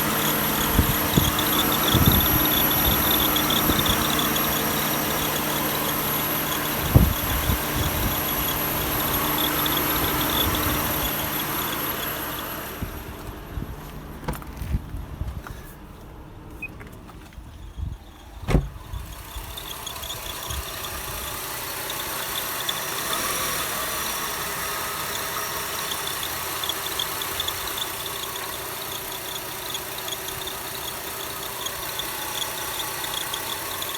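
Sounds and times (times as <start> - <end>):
high pulsing belt whistle: 0.0 - 13.1, 18.8 - 33.9
engine knocks: 0.0 - 33.9
engine running steadily: 0.0 - 33.9
loud thump: 18.5 - 18.8.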